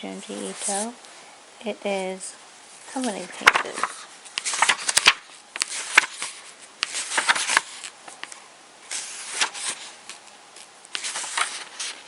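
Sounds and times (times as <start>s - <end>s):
book pages flipping: 2.9s - 12.0s.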